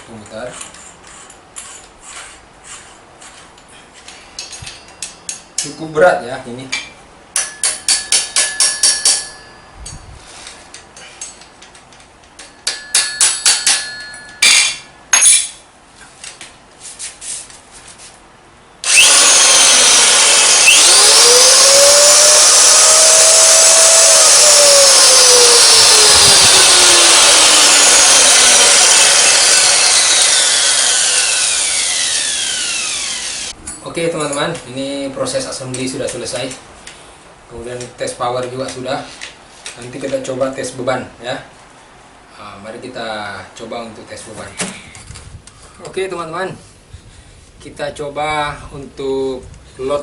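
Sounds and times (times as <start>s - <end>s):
drill motor running: 18.8s - 33.5s.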